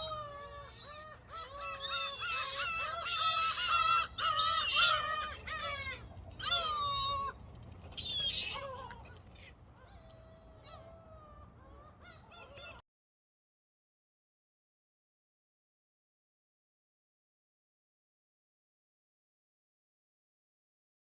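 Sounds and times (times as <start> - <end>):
gulls calling: 0.0 - 12.8.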